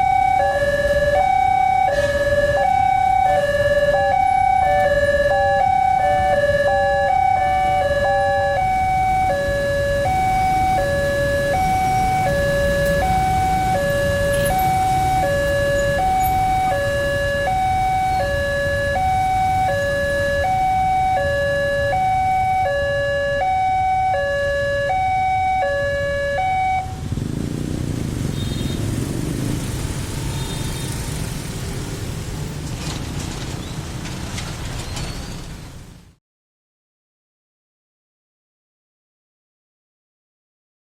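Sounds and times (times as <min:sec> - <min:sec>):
two-tone warning siren: 0:00.0 - 0:27.3.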